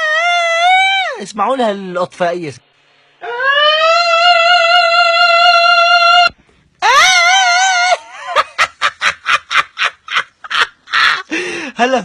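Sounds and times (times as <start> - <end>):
bursts of laughter: 7.8 - 11.3.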